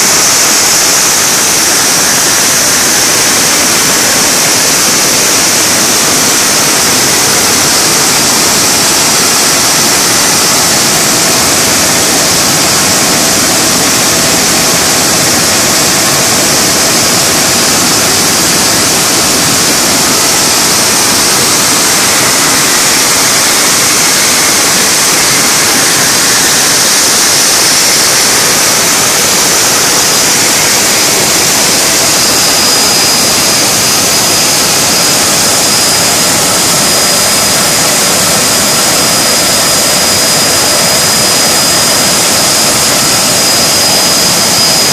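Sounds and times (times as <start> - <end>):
compressor running with hiss: 0.0 - 44.9
faint high whine: 0.0 - 44.9.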